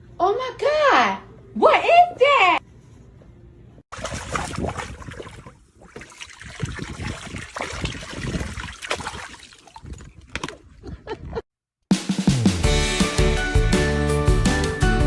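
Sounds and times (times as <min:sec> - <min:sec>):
water splashing and trickling: 0:03.9 - 0:10.8.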